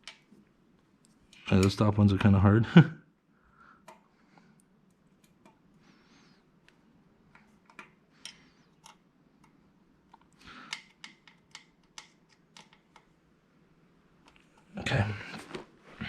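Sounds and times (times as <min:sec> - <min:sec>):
metallic clicks and taps: 0:07.3 - 0:13.1.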